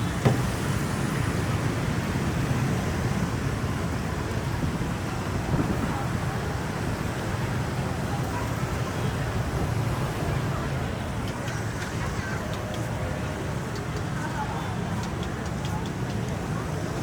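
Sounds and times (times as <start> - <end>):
traffic hum: 0.0 - 17.0
crowd voices: 5.0 - 17.0.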